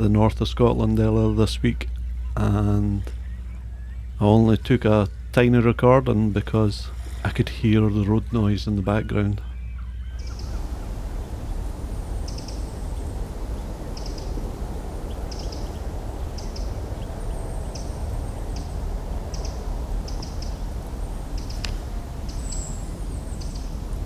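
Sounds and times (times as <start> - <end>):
low background rumble: 0.0 - 24.0
small birds chirping: 0.0 - 24.0.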